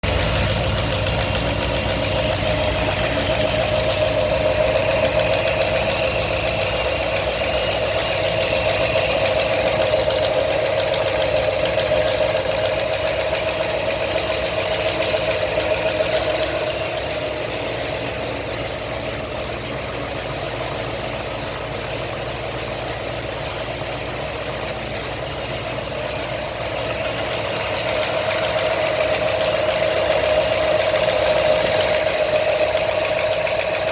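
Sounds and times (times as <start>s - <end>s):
engine idling with knock: 0.0s - 33.9s.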